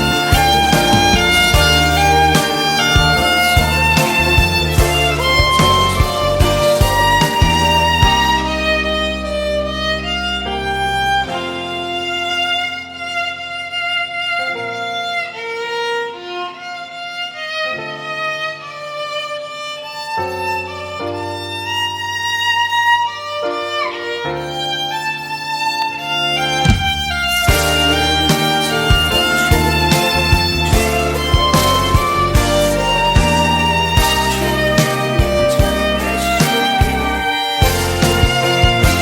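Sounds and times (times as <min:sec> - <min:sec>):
low held backing chords: 0:00.0 - 0:13.7, 0:26.4 - 0:39.0
violin playing slow melody: 0:00.0 - 0:39.0.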